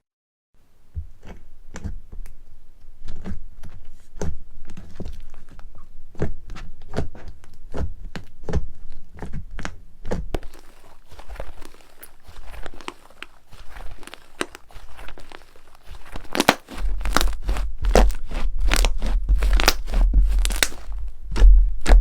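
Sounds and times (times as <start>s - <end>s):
slime pressed with dull thuds: 6.2s - 22.0s
slime crunching and crackling: 10.4s - 22.0s.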